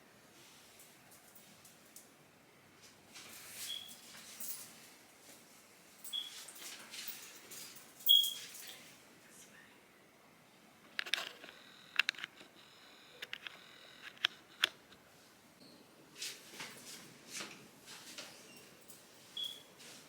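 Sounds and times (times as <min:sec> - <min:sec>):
soft rustling: 0:16.2 - 0:20.0.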